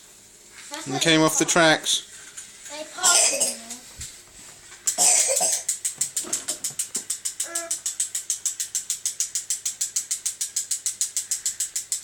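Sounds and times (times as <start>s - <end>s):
toy train motor clicking: 4.8s - 12.0s.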